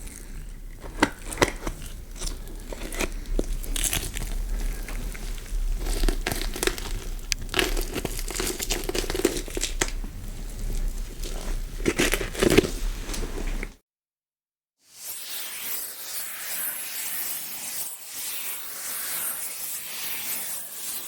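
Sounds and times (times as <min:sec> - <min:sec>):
crackling and tearing noises: 0:00.0 - 0:13.7.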